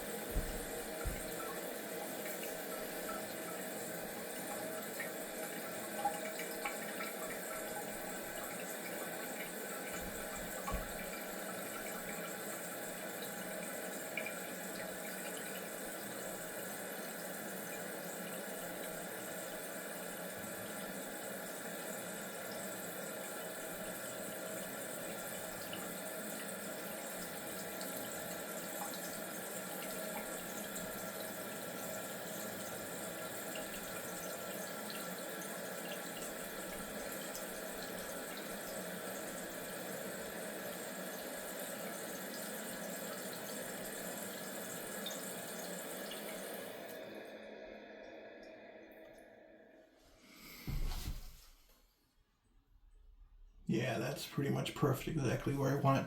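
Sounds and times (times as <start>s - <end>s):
water filling toilet tank: 0.0s - 47.2s.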